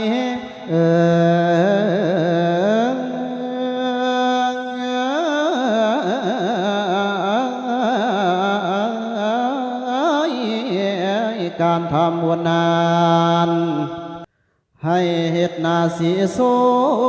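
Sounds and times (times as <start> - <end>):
man chanting melisma: 0.0 - 17.0.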